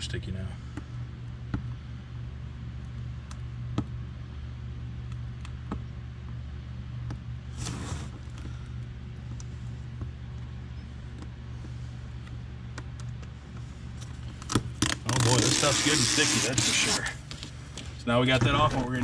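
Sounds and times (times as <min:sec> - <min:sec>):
backing peeling tearing rustle: 0:14.3 - 0:17.5.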